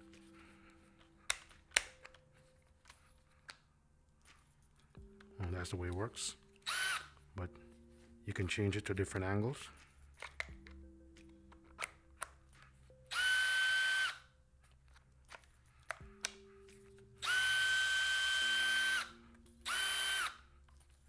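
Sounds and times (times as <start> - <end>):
cordless drill motor whining: 6.6 - 7.2, 13.1 - 14.3, 17.2 - 20.4.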